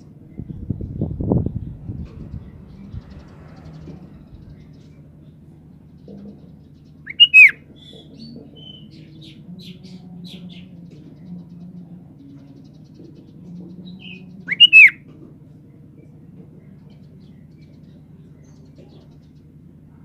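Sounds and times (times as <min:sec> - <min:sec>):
soft high bird chirps: 0:05.8 - 0:09.0, 0:13.9 - 0:15.0
bird whistled calls: 0:07.1 - 0:08.0, 0:14.0 - 0:15.0.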